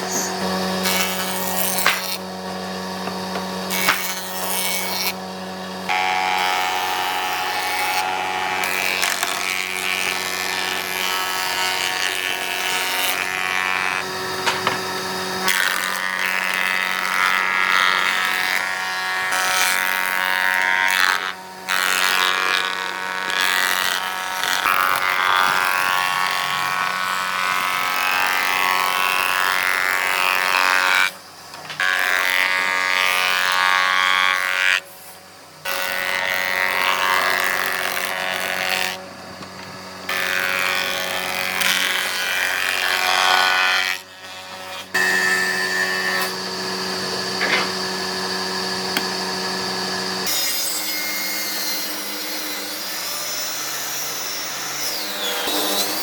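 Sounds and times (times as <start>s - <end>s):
wood rasping: 0.0s - 5.2s
power tool motor hum: 0.0s - 18.6s, 44.8s - 51.5s.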